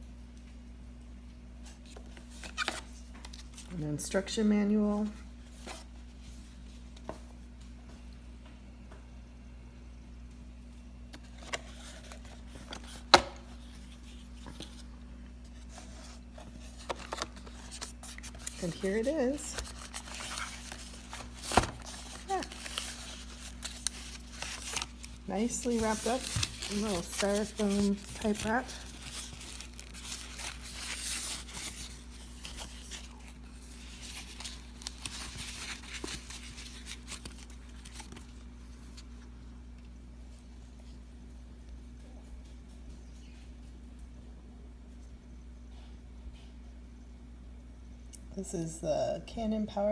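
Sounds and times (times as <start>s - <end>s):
packaging rustling: 15.5s - 39.1s
foam wrap crinkling and tearing: 15.6s - 38.4s.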